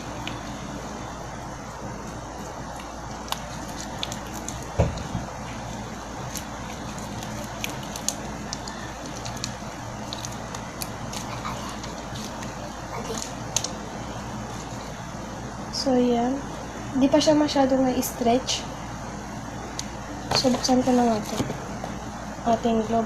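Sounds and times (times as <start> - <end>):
slime being kneaded by hand: 0.0 - 13.8
steady background hum: 0.0 - 23.0.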